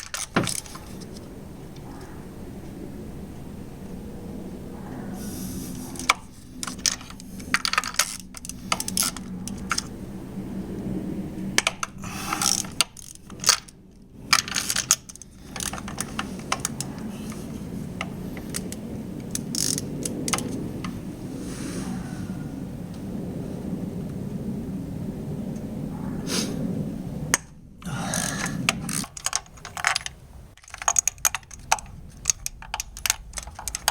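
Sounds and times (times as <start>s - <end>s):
steady low hum: 0.0s - 33.9s
ratchet clicks: 6.0s - 9.9s, 18.0s - 20.6s, 28.1s - 33.9s.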